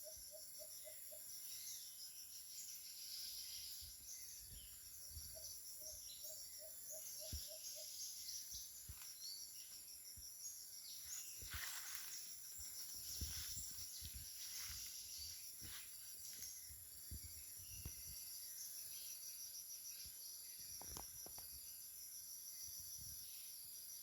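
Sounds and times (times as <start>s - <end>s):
insects droning: 0.0s - 24.0s.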